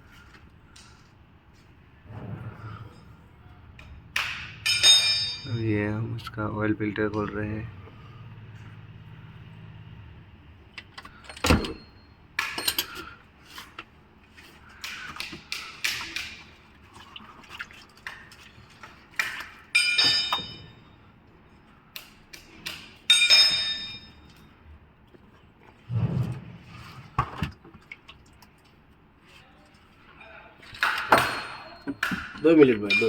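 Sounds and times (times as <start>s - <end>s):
metal tools knocking and clinking: 3.8s - 5.7s, 10.8s - 13.2s, 19.7s - 20.8s, 23.0s - 24.4s, 30.8s - 33.0s
ringing metallic clanks: 3.8s - 6.0s, 19.8s - 20.9s, 23.1s - 24.5s, 30.8s - 33.0s.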